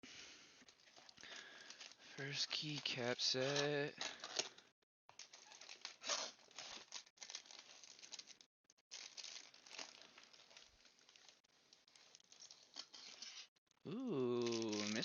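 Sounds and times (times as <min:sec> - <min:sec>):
packaging crinkling and rustling: 0:00.6 - 0:13.5, 0:14.2 - 0:15.0.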